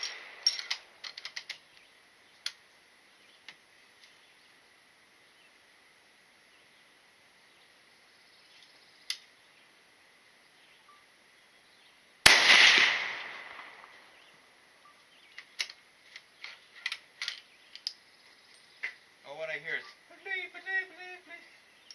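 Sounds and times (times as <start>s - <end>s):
gunshot: 12.3s - 14.0s.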